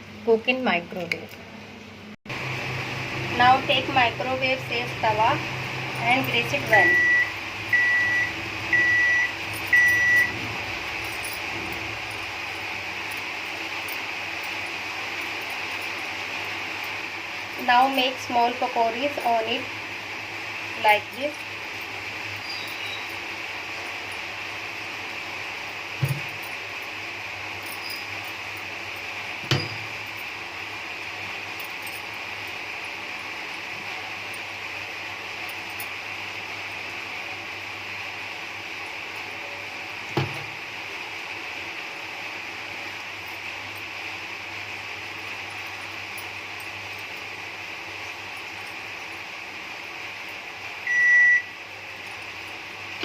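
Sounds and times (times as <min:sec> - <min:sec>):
steady hum and hiss: 0:00.0 - 0:53.0
microwave oven beeping: 0:05.5 - 0:12.8, 0:29.4 - 0:30.0, 0:50.8 - 0:51.6.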